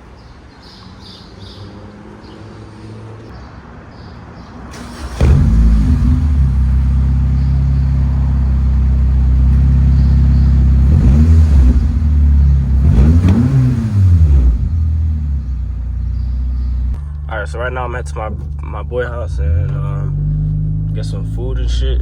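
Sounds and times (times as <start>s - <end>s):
car engine revving: 4.7s - 17.0s, 19.2s - 21.8s.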